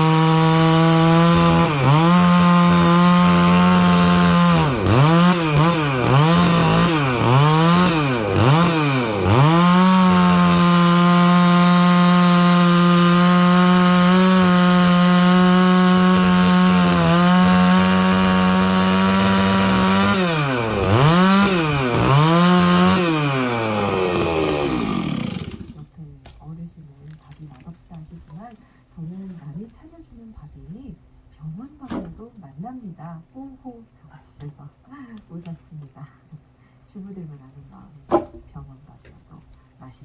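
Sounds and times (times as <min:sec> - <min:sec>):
chainsaw cutting wood: 0:00.0 - 0:25.9.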